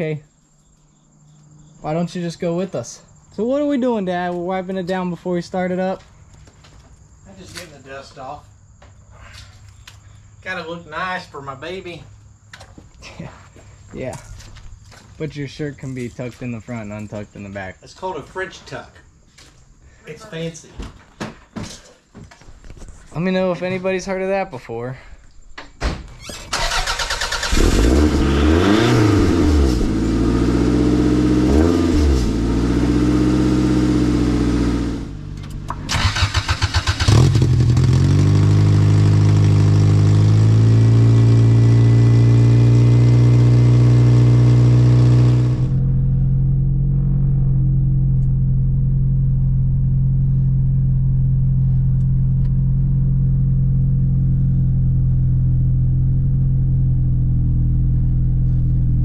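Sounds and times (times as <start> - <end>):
engine cranking: 26.3 - 28.0, 35.3 - 37.8
car engine revving and idling: 27.3 - 59.0.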